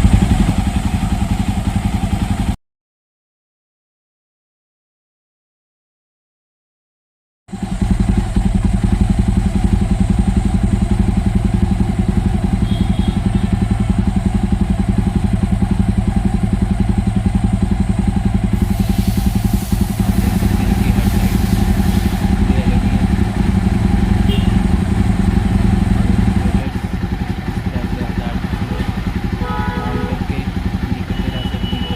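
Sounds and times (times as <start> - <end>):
motorcycle engine idling: 0.0 - 2.6, 7.5 - 31.9
hiss: 18.5 - 23.0.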